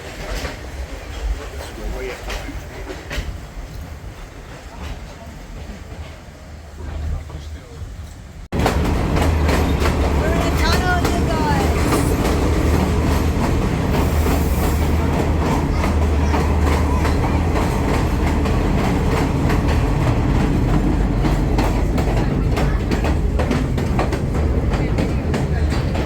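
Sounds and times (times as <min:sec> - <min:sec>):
train low rumble: 0:00.0 - 0:26.0
wheels clicking over rail joints: 0:08.1 - 0:26.0.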